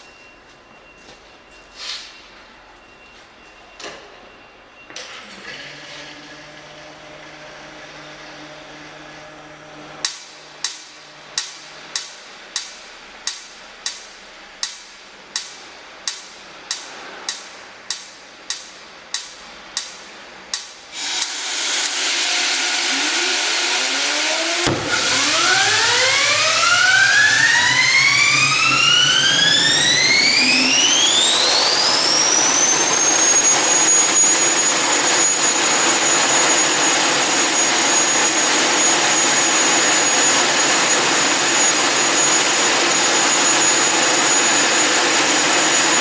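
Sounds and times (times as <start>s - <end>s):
turbine whine: 0.0s - 12.0s, 20.9s - 46.0s
ignition spark snaps: 10.0s - 22.6s
jet engine rushing roar: 21.0s - 46.0s
steady hum: 22.9s - 44.2s
thump: 24.6s - 25.0s.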